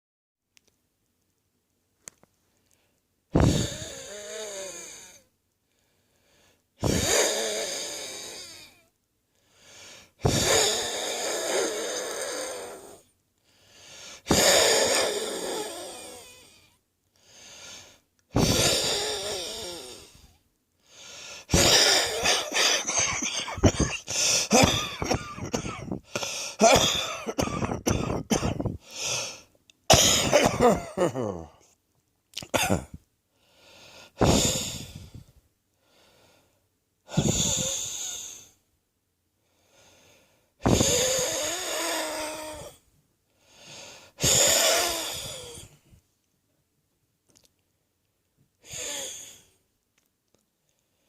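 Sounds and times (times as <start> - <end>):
person wheezing: 3.4 - 5.3, 6.8 - 8.9, 9.6 - 13.0, 13.7 - 20.4, 21.0 - 31.6, 33.6 - 35.3, 37.1 - 38.6, 40.0 - 42.8, 43.5 - 45.8, 48.6 - 49.6
rapid coughing: 14.2 - 15.4, 21.4 - 31.6, 32.4 - 33.0.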